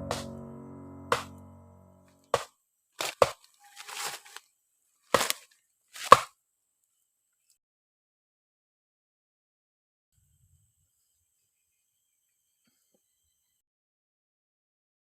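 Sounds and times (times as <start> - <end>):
blade chopping into wood: 2.4 - 3.4, 5.2 - 5.4, 6.0 - 6.3
brief rustle: 3.0 - 4.4.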